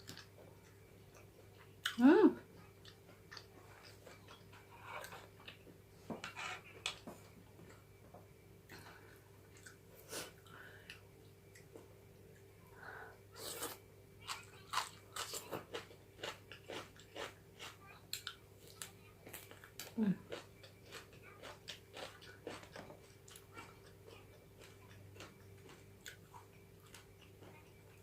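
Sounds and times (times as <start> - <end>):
mouth chewing and crunching bones: 13.4 - 28.0.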